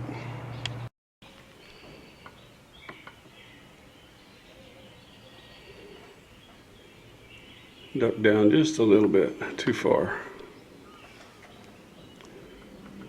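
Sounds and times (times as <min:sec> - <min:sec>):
faint bird chirps: 0:00.2 - 0:08.4.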